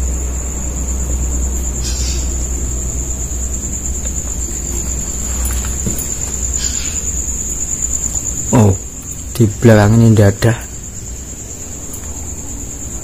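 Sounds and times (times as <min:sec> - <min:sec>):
low steady rumble: 0:00.0 - 0:09.6
crickets chirring: 0:00.0 - 0:13.0.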